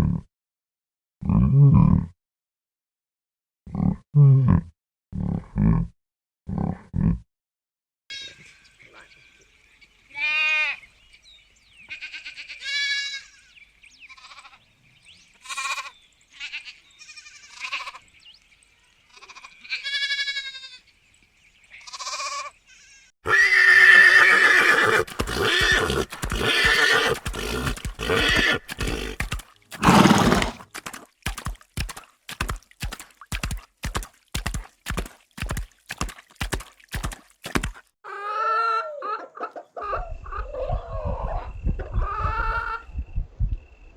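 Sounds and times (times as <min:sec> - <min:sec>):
farm animals calling: 0:21.8 - 0:30.6.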